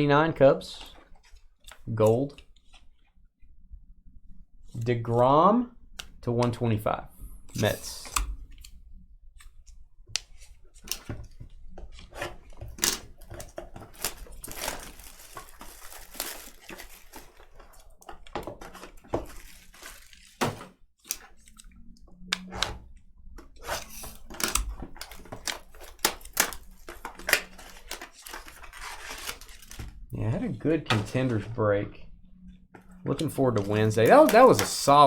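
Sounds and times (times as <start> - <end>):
packaging tearing and crinkling: 12.3 - 17.9, 18.7 - 20.6, 23.8 - 29.9, 33.8 - 35.0.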